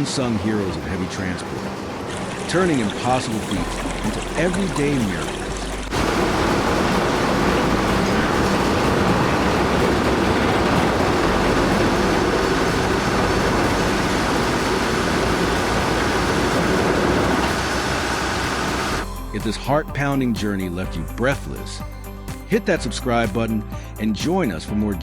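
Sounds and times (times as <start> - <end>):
heavy vehicle engine rumble: 0.7 - 19.0.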